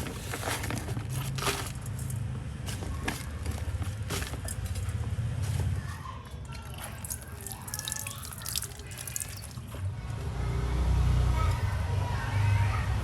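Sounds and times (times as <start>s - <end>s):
water dripping and splashing: 6.4s - 9.8s.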